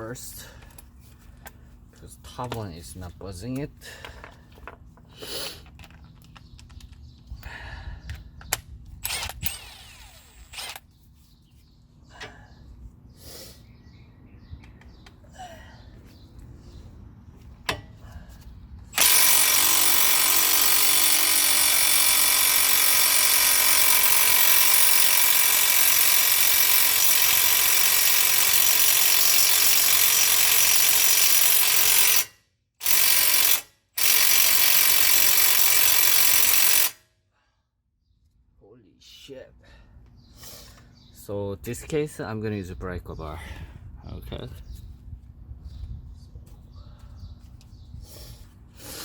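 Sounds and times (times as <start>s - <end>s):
impact wrench hammering: 19.0s - 37.0s.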